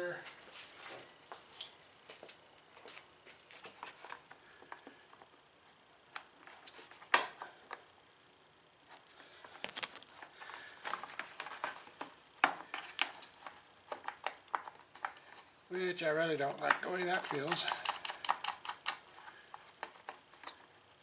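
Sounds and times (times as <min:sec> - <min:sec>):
small metallic clicks and taps: 0:16.6 - 0:19.0.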